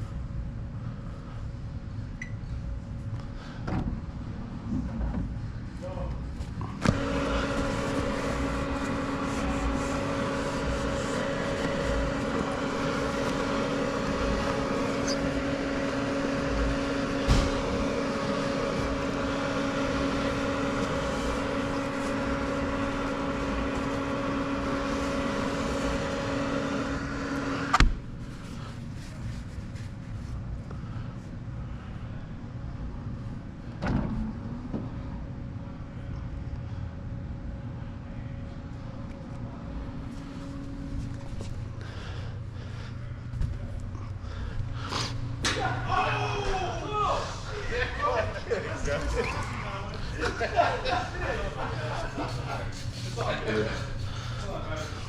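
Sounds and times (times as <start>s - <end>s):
machine motor humming: 6.6s - 28.6s, 39.3s - 55.0s.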